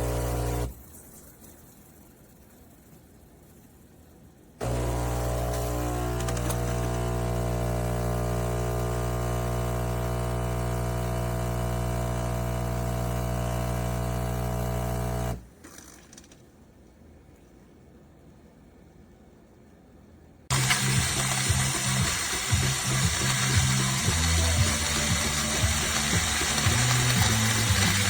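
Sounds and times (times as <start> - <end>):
espresso machine humming: 0.0 - 0.7, 4.6 - 15.4, 20.5 - 28.0.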